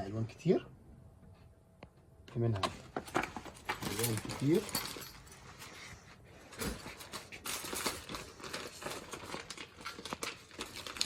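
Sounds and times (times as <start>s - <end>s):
clothing rustling and crinkling: 2.8s - 11.0s.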